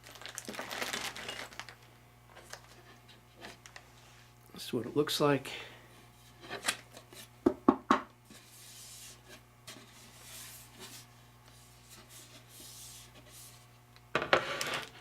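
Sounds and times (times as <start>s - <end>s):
soft rubbing and rustling: 8.3s - 13.7s.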